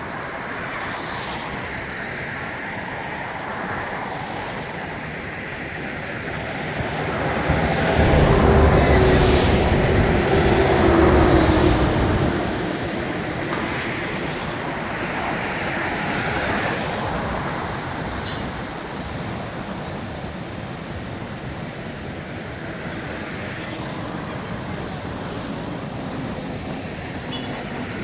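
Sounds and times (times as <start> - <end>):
steady outdoor rushing noise: 0.0 - 28.0
vehicle engine rumble passing: 6.1 - 17.4.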